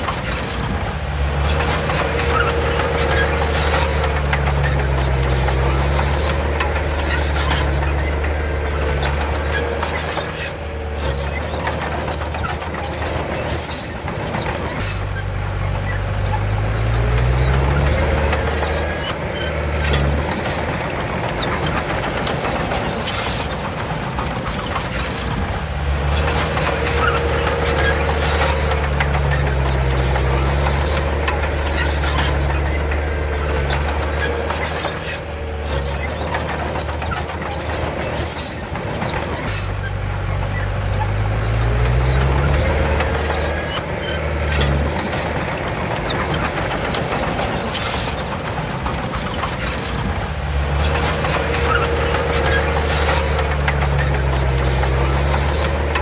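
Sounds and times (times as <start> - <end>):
bulldozer diesel engine working: 0.0 - 56.0.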